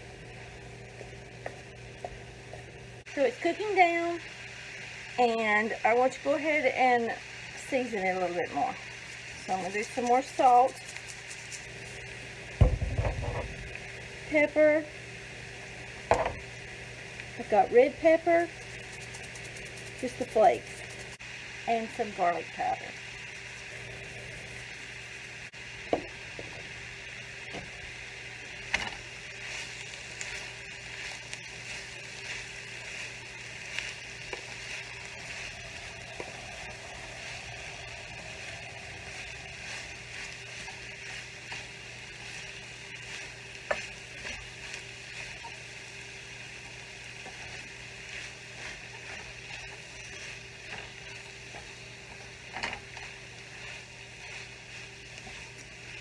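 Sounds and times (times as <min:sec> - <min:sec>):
vegetables sizzling in frying pan: 0:00.0 - 0:56.0.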